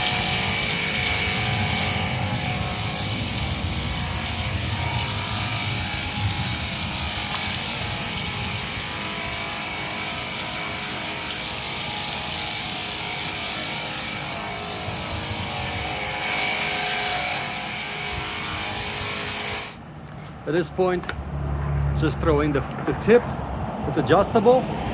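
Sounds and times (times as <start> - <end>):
motor and pump hum: 0.0 - 19.8
pressure washer spray hiss: 0.0 - 19.8.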